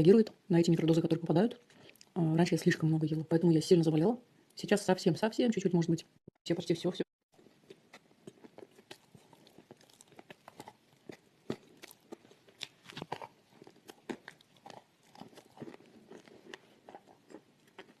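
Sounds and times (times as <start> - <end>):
close-up chewing and crunching: 1.5 - 2.2, 7.3 - 18.0.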